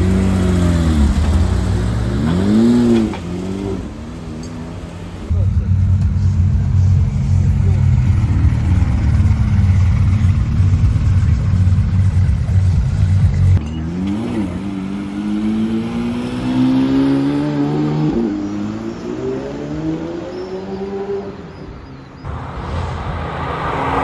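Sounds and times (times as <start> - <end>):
steady low engine note: 5.3 - 13.6
engine accelerating: 5.3 - 21.2.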